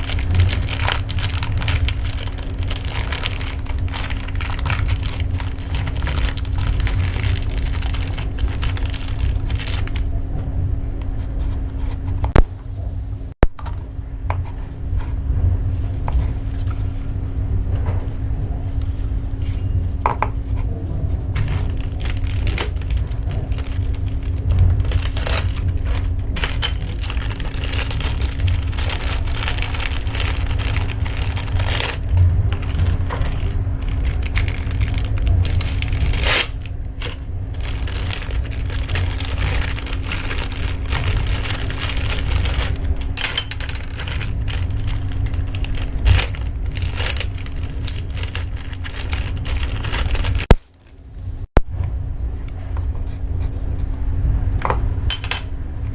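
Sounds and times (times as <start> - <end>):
steady low hum: 0.0 - 55.9
metal parts clinking and rattling: 26.4 - 28.1, 41.8 - 44.6, 55.1 - 55.5.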